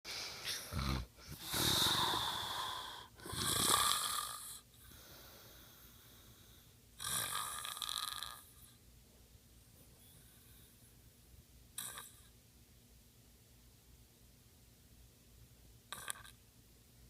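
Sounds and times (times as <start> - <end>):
man snoring: 0.4 - 4.6, 7.0 - 8.4.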